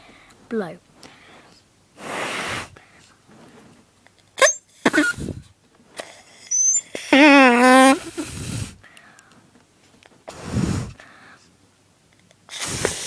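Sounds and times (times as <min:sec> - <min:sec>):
breathy puff of air: 0:01.1 - 0:02.9, 0:10.3 - 0:11.4, 0:12.5 - 0:13.0
short squeaks: 0:04.4 - 0:05.2, 0:06.5 - 0:07.0.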